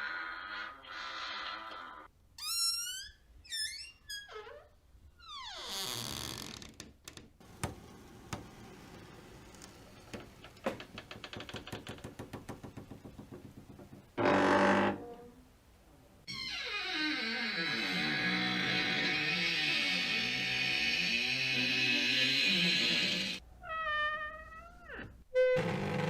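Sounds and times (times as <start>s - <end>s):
slow hinge creak: 0.9s - 12.2s, 14.2s - 15.3s, 16.3s - 23.4s
knocks on door: 11.3s - 14.1s.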